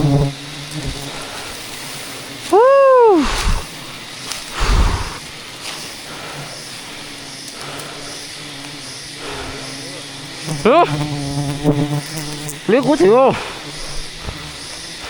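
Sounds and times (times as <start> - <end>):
man whooping: 2.5 - 3.7, 10.7 - 11.0, 12.8 - 13.4.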